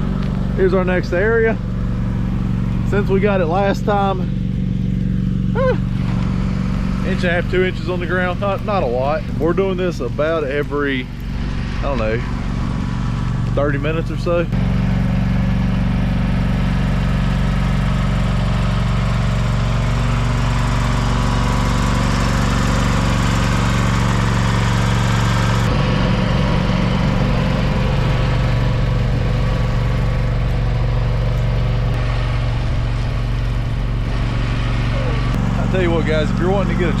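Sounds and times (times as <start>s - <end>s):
garden tractor engine running: 0.0s - 37.0s.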